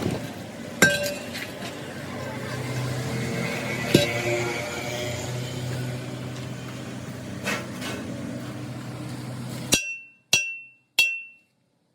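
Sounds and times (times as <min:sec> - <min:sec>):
steady background noise: 0:00.0 - 0:11.9
sharp metallic ding: 0:09.7 - 0:11.5.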